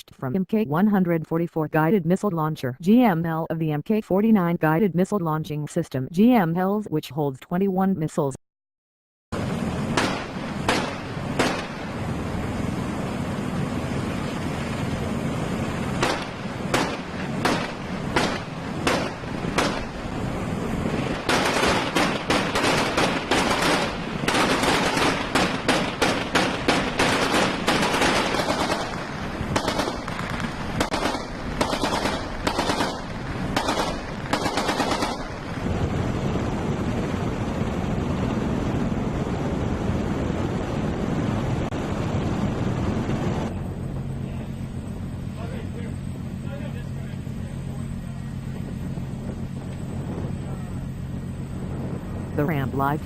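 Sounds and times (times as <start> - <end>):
wind: 9.3 - 53.0
machine-gun fire: 9.9 - 11.9, 16.0 - 20.0, 21.0 - 35.6.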